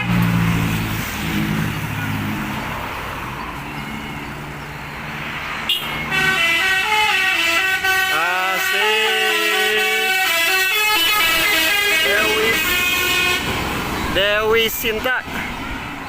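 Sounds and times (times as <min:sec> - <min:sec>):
passing traffic road noise: 0:00.0 - 0:16.0
bus horn playing a tune: 0:05.7 - 0:13.6.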